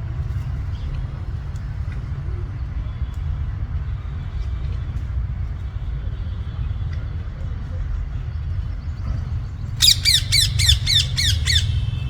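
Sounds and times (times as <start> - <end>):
parrot squawking: 9.8 - 12.0.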